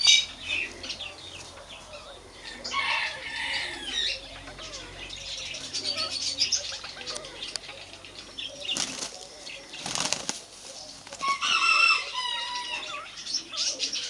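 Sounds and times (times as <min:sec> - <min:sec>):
bird wings flapping: 0:08.7 - 0:11.4.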